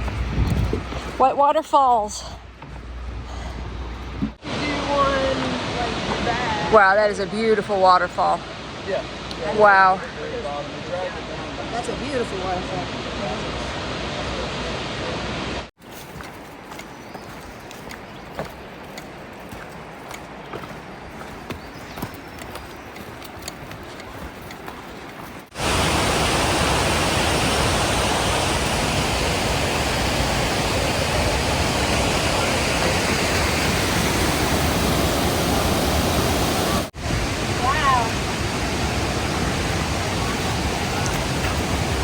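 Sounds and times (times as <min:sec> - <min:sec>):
distant waterfall hiss: 0:00.9 - 0:42.0
roar of falling water: 0:25.5 - 0:42.0.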